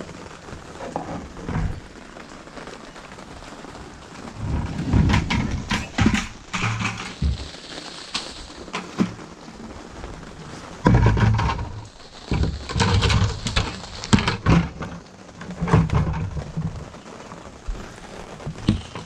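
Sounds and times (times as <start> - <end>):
handling noise: 0.7 - 2.1, 4.2 - 9.6, 17.7 - 19.0.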